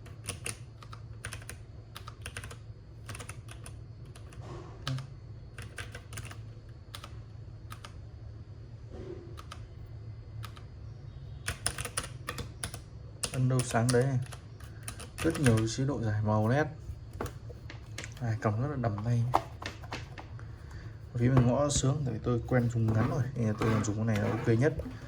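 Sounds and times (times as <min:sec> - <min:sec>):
low steady hum: 0:00.0 - 0:25.0
keyboard keys clicking: 0:00.1 - 0:07.1, 0:11.5 - 0:15.8.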